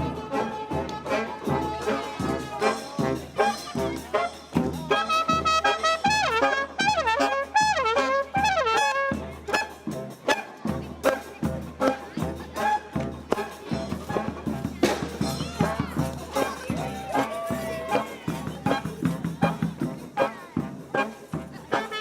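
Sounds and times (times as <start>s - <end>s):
trumpets and trombones playing: 0.0s - 10.5s, 11.8s - 22.0s
steady drum strokes: 9.2s - 21.8s.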